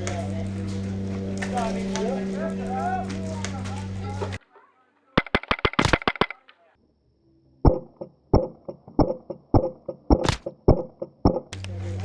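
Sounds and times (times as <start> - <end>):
sharp crack: 5.2 - 6.7, 10.1 - 10.6.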